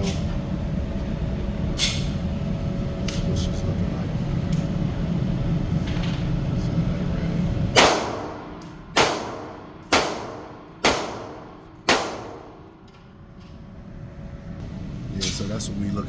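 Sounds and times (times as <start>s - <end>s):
ventilation low rumble: 0.0s - 16.0s
reverberant gunshots indoors: 7.7s - 13.0s.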